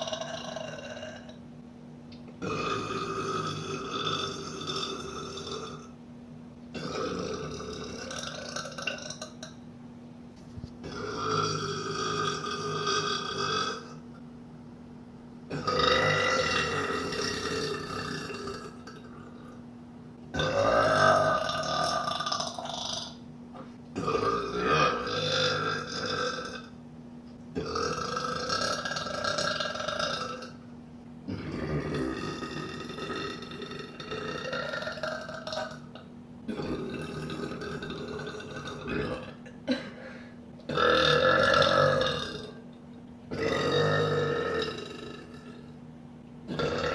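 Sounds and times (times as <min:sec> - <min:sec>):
woman belching: 0:00.0 - 0:01.4, 0:02.4 - 0:05.9, 0:06.8 - 0:09.5, 0:10.8 - 0:14.0, 0:15.5 - 0:19.6, 0:20.4 - 0:23.1, 0:24.0 - 0:26.7, 0:27.6 - 0:30.6, 0:31.3 - 0:40.0, 0:40.7 - 0:42.6, 0:43.3 - 0:45.6, 0:46.5 - 0:46.9.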